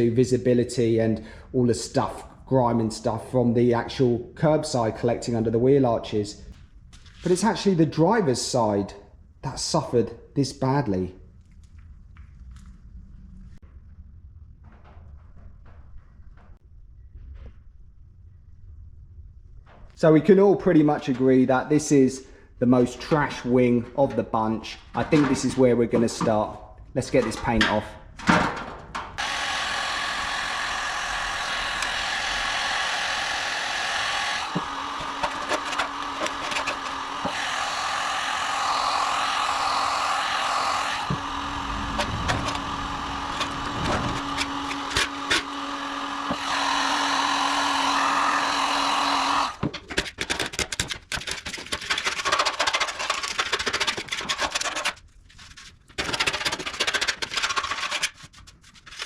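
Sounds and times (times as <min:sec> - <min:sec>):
broken scraping: 0:49.7 - 0:59.0.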